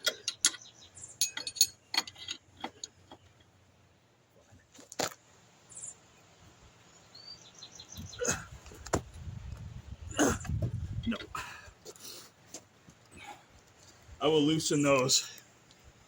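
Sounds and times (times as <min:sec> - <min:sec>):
metal tools clinking: 0:00.0 - 0:03.5.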